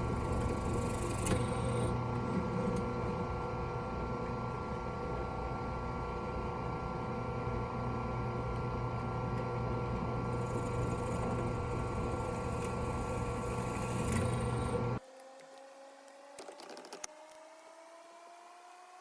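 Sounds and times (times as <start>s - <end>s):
power tool motor running: 0.0s - 2.0s, 10.3s - 15.0s.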